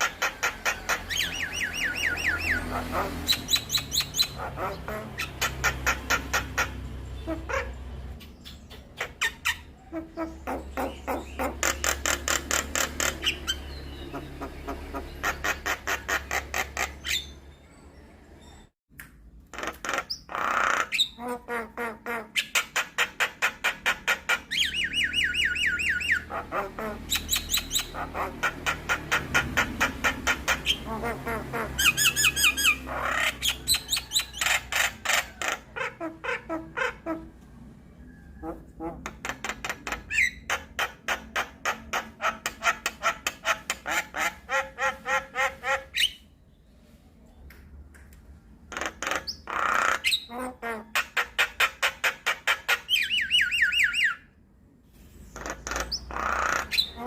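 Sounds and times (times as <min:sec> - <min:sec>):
myna chattering: 0:00.0 - 0:13.3.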